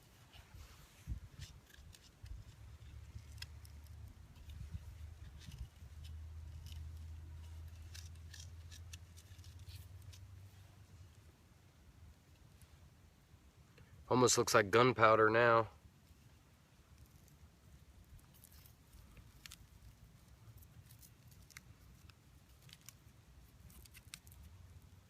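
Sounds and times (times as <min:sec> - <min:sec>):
faint clicks and scrapes: 0:00.0 - 0:11.2, 0:16.0 - 0:24.8
low steady rumble: 0:00.0 - 0:25.0.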